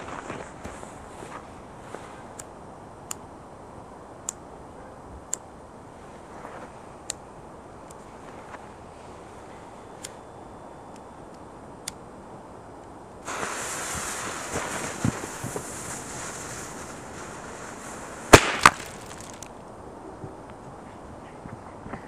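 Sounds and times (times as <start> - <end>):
fuse hissing: 13.2 - 19.4
firecracker bangs: 18.3 - 19.5.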